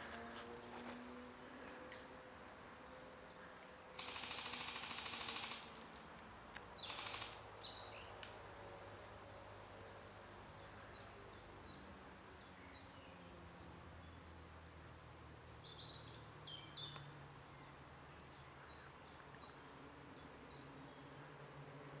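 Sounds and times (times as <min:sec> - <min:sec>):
airsoft gun firing bursts: 0:04.0 - 0:05.8, 0:06.8 - 0:07.5.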